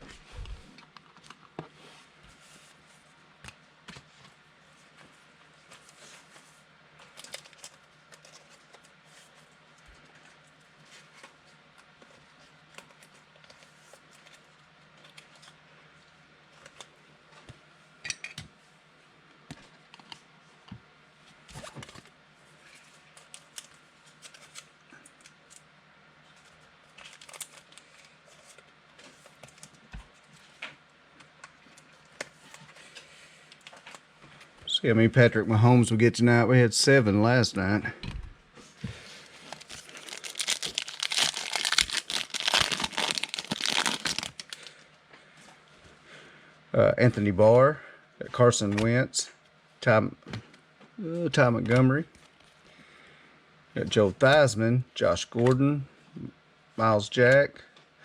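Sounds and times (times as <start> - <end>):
card pack crinkles: 27.0 - 28.6, 39.2 - 44.8
trading cards rustling and clicking: 39.3 - 44.7.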